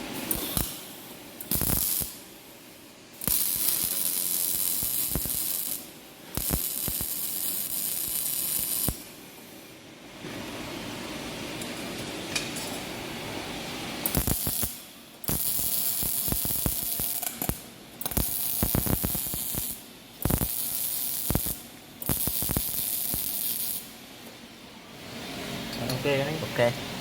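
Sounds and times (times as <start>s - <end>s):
welding arc crackling: 0.2s - 2.4s, 3.1s - 9.1s, 14.0s - 24.0s.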